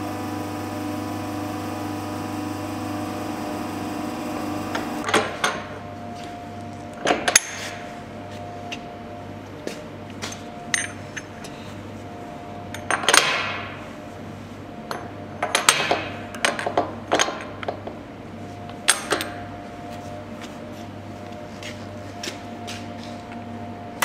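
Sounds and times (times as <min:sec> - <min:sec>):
metallic clanks and rings: 0:10.3 - 0:11.4.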